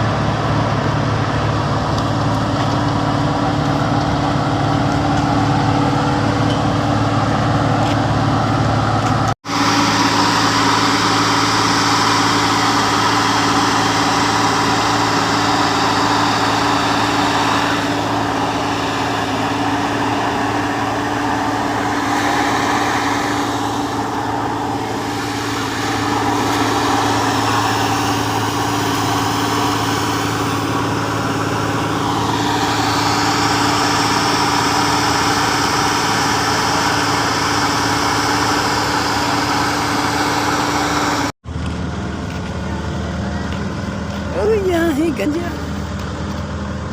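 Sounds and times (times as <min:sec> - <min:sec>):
construction machinery engines running: 0:00.0 - 0:46.9.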